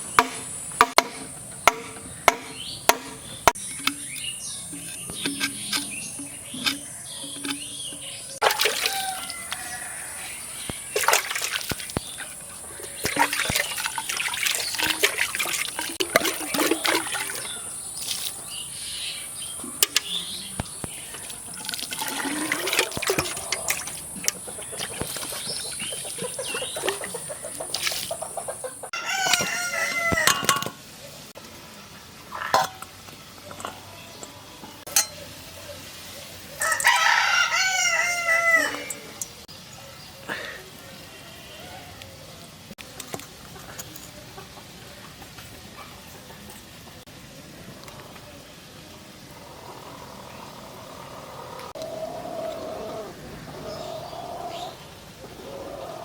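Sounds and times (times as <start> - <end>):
rooster crowing: 8.4 - 10.6, 28.9 - 30.5, 36.6 - 39.1
chickens clucking: 19.6 - 31.3, 49.2 - 56.0.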